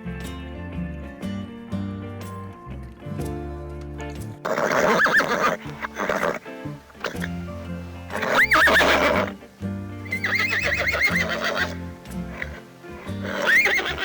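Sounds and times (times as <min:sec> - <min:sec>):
background music: 0:00.0 - 0:14.0
horse neighing: 0:04.4 - 0:14.0.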